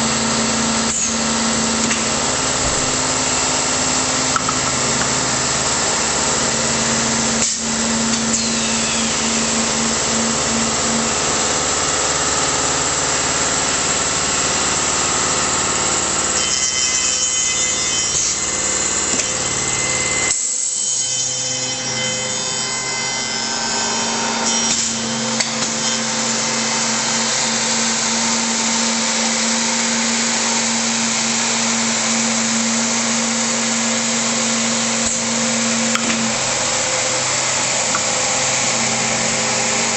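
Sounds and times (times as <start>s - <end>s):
woodworking machine running: 0.0s - 39.9s.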